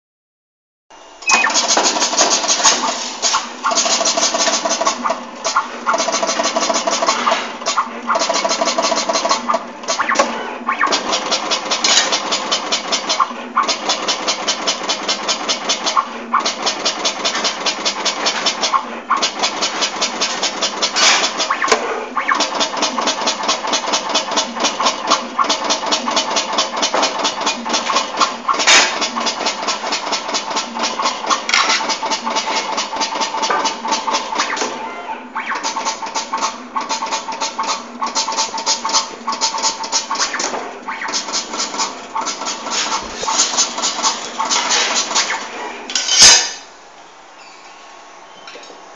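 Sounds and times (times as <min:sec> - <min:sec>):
dispensing machine clattering: 0:01.2 - 0:34.8, 0:35.6 - 0:46.7
sharp machine click: 0:01.2 - 0:34.8.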